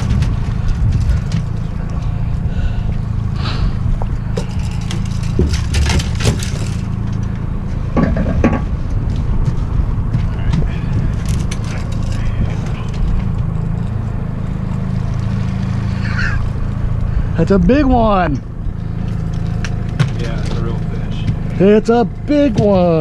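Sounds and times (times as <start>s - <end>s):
outboard motor running: 0.0s - 23.0s
knocks and scrapes of gear: 4.4s - 15.8s.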